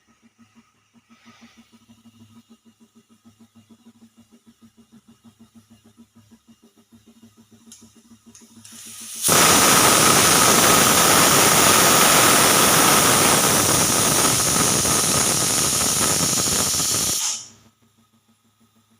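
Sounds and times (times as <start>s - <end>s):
pressure cooker whistle: 8.8s - 17.6s.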